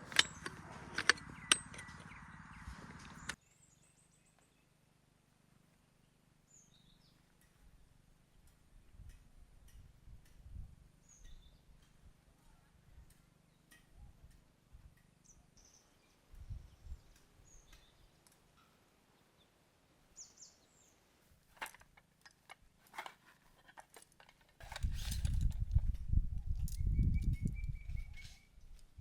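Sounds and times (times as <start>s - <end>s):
low rumbling with rustles: 0.0s - 3.4s, 22.8s - 29.0s
faint bird chirps: 11.0s - 14.3s, 26.6s - 28.9s.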